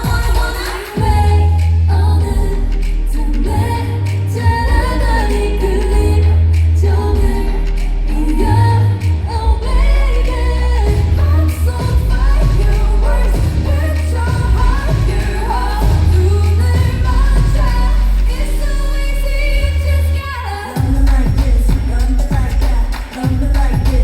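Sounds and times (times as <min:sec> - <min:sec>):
heavy bass beat: 0:00.0 - 0:20.2, 0:20.8 - 0:24.0
pop song with singing: 0:00.0 - 0:24.0.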